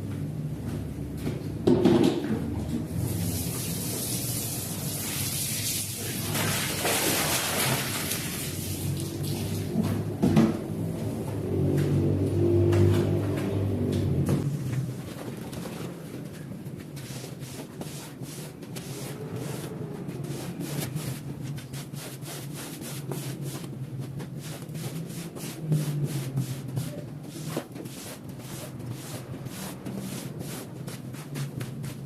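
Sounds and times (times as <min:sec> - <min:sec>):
rubbing strokes on a rug: 0:16.8 - 0:32.0.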